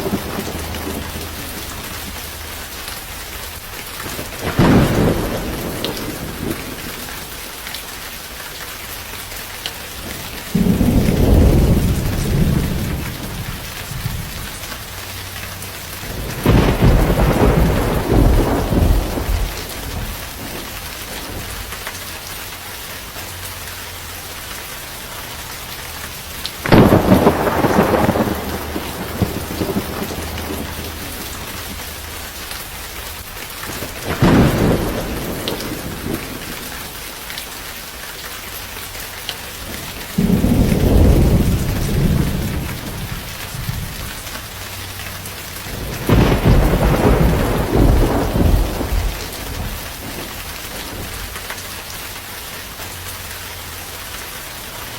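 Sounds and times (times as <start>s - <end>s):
thunder rumbling: 0.0s - 7.5s, 10.0s - 22.1s, 26.2s - 37.0s, 39.6s - 51.6s
steady rain: 0.0s - 54.9s.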